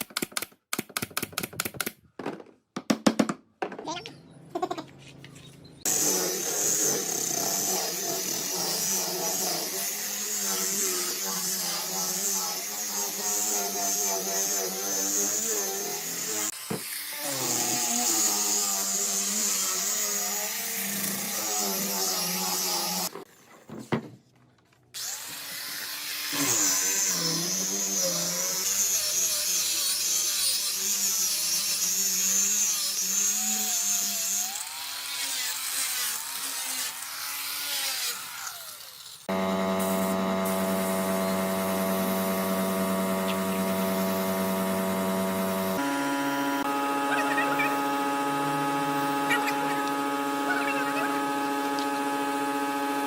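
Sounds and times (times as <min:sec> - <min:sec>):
electric power tool running: 0:05.8 - 0:23.1, 0:25.0 - 0:53.0.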